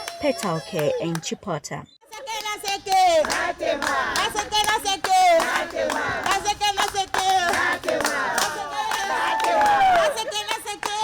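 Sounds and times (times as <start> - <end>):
hands clapping in rhythm: 0.0 - 1.4, 2.2 - 11.0
group of people singing: 2.0 - 10.7.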